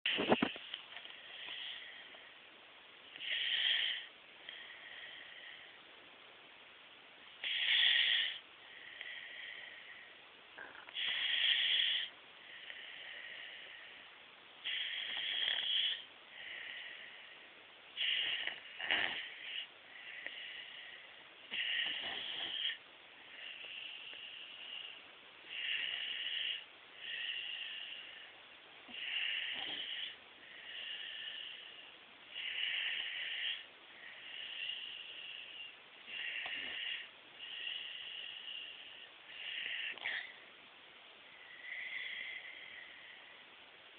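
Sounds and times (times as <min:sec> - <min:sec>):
quiet breathing: 0:00.1 - 0:43.9
person snoring: 0:14.6 - 0:17.2, 0:18.0 - 0:22.8.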